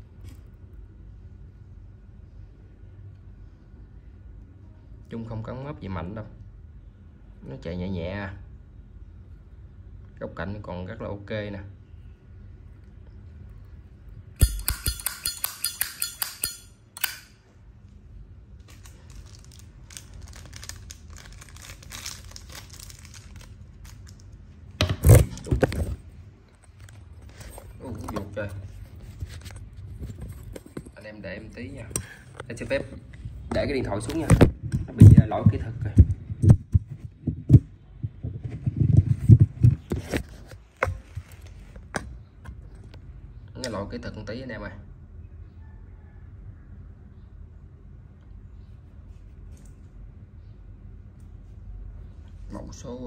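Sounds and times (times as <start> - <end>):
metallic lighter clicks: 14.4 - 17.3.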